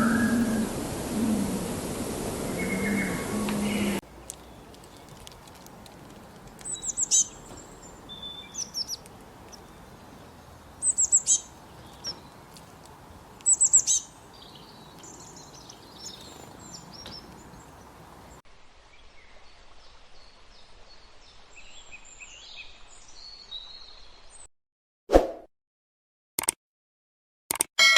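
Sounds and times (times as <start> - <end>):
soft bird chirps: 0.0 - 1.2, 6.6 - 24.5
birds singing: 0.0 - 5.6, 6.2 - 18.4
outdoor hiss: 0.0 - 23.4.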